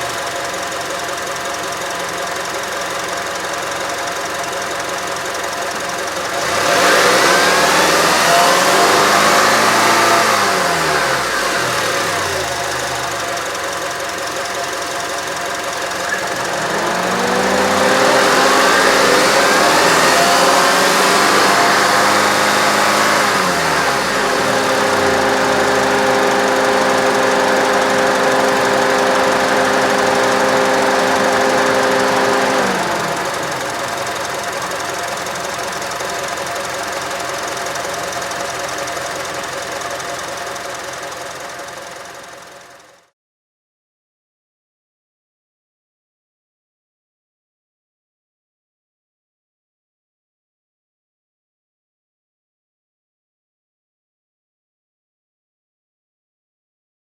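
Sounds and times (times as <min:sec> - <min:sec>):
car engine idling and revving: 0:00.0 - 0:43.1.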